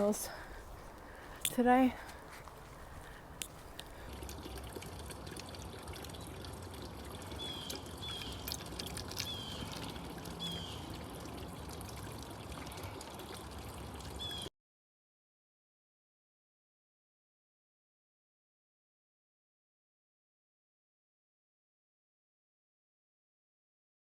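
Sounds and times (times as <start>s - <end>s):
trickling water: 0.0s - 14.5s
bird chirping: 7.4s - 11.0s.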